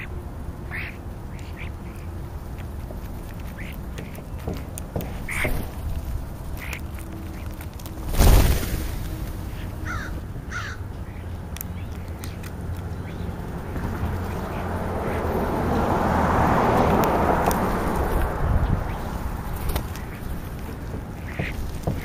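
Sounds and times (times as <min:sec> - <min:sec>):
crow cawing: 0:09.8 - 0:10.8.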